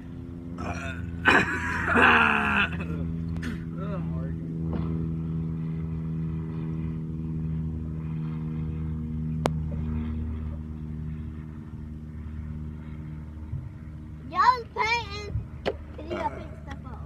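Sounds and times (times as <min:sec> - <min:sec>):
car engine humming: 0:00.0 - 0:17.0.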